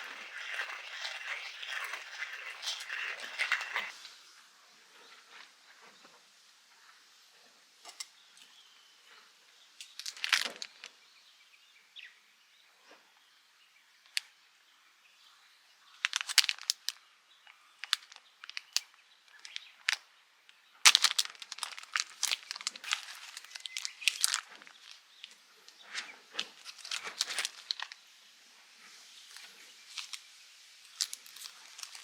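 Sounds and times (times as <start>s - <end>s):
crinkling and rustling handling noise: 0.0s - 4.2s, 9.8s - 11.0s, 16.0s - 28.1s, 28.7s - 32.0s.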